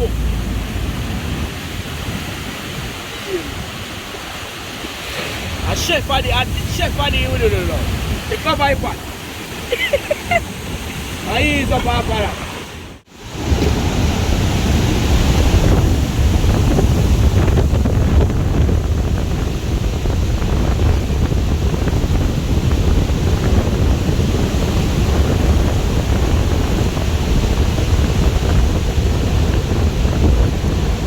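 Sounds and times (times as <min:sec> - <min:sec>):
wind on microphone: 0:00.0 - 0:31.0.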